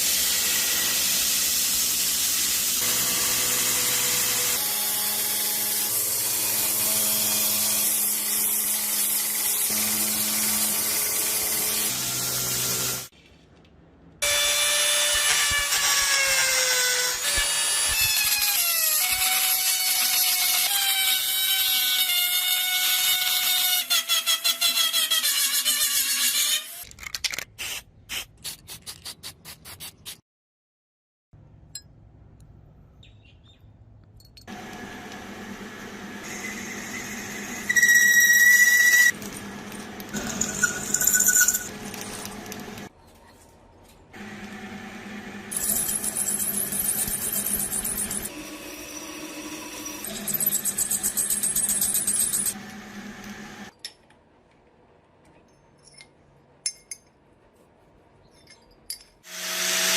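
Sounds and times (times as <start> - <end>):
power tool grinding steel: 0.0 - 13.1, 34.5 - 42.9, 44.2 - 53.7.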